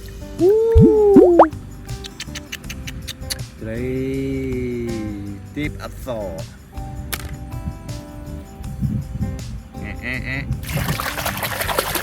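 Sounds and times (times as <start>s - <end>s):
quick clicks: 1.9s - 3.5s.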